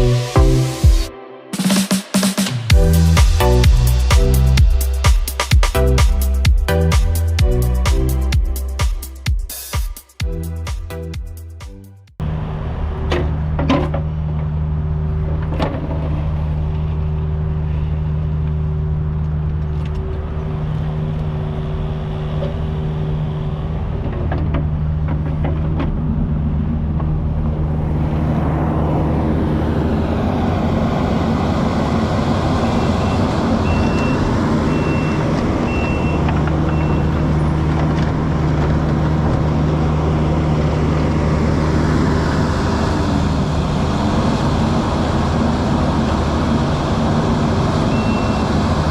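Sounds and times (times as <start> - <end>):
excavator diesel engine running: 12.3 - 48.9
backup alarm beeping: 33.0 - 37.3.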